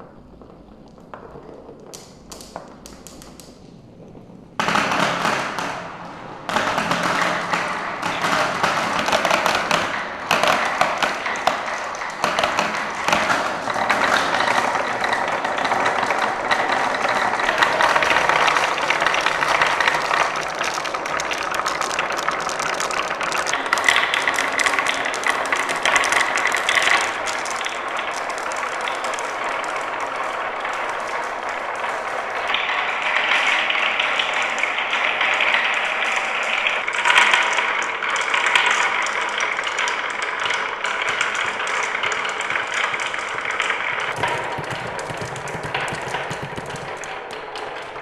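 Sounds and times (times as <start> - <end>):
marbles rolling and clattering: 0.0 - 48.0.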